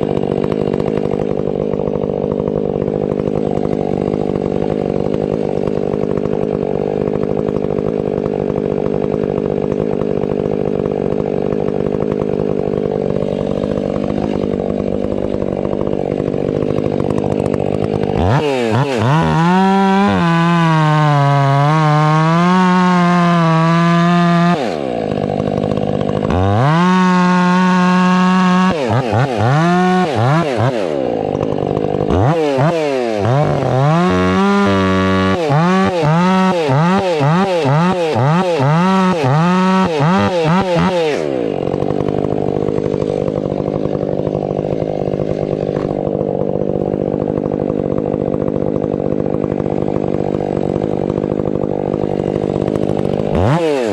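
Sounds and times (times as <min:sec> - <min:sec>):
chainsaw cutting wood: 0:00.0 - 0:53.9.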